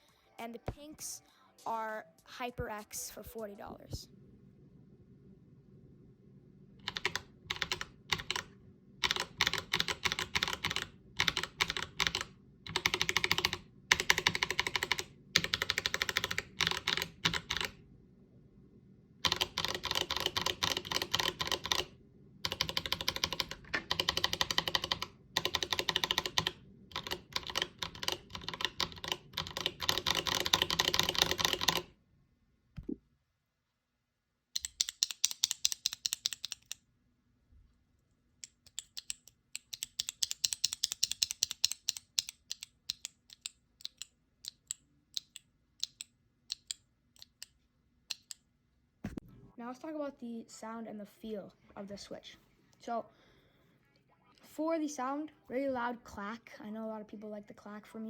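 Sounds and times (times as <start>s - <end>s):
typing on mechanical keyboard: 6.8s - 17.8s, 19.2s - 31.9s, 34.6s - 36.8s, 38.4s - 47.5s.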